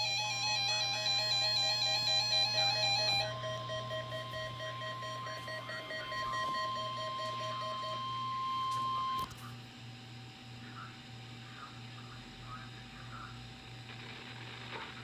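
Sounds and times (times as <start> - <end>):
long high warning beep: 0.0 - 9.3.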